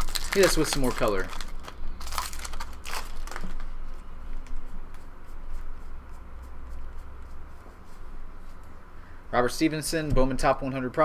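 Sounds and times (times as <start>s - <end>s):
foil pack rustling: 0.0s - 3.8s
cards rustling and flicking: 0.0s - 5.1s
steady low hum: 0.0s - 11.0s.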